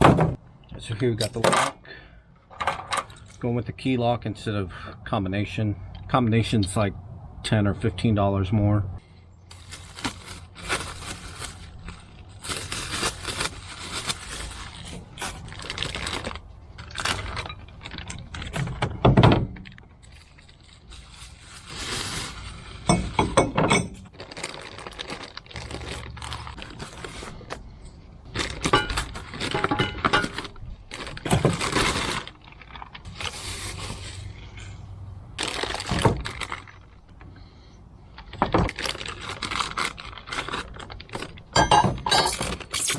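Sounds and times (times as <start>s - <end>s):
metal rack parts clattering: 1.2s - 1.8s, 2.5s - 3.2s, 41.6s - 42.9s.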